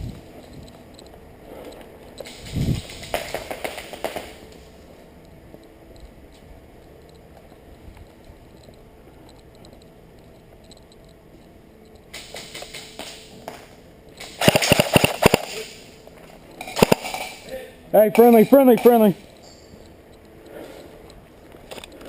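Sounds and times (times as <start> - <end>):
sharp cracks or knocks: 2.2 - 4.6, 12.1 - 15.8, 16.6 - 17.5.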